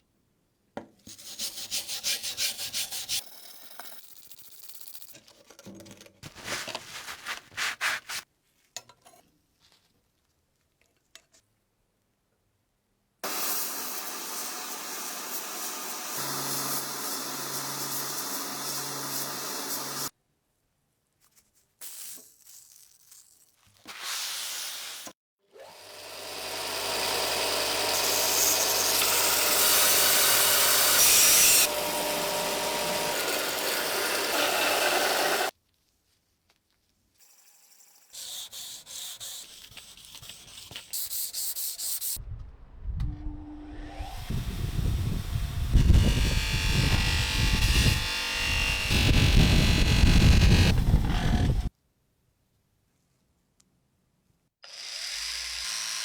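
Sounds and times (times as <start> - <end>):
rubbing or scraping strokes: 6.2 - 8.3
power tool pulsing hum: 25.6 - 35.5, 43.3 - 51.7.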